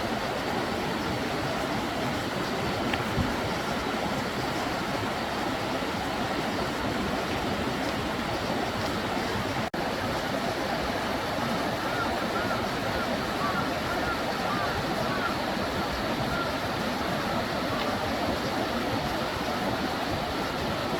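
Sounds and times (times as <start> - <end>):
mountain stream rushing: 0.0 - 20.9.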